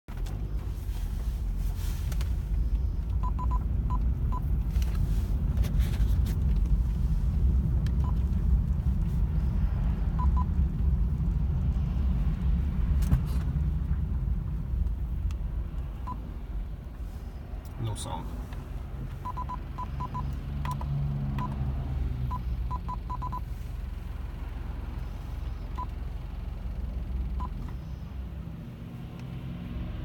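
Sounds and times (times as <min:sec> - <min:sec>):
car cabin low rumble: 0:00.1 - 0:29.5
short high beeps: 0:19.2 - 0:20.2.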